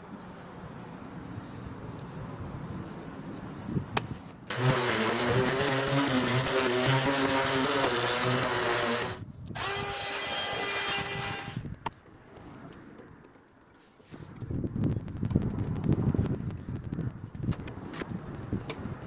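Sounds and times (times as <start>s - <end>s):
electric power tool running: 4.5s - 11.6s.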